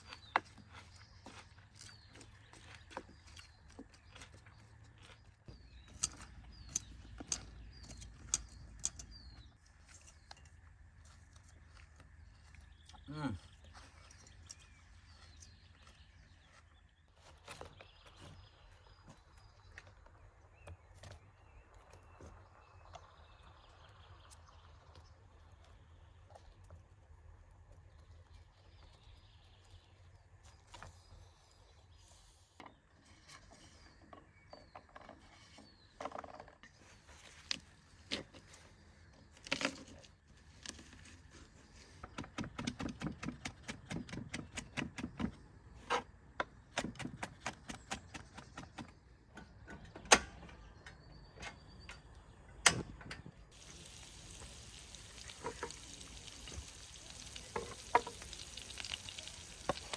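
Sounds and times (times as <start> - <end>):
food sizzling in a pan: 53.6 - 59.9.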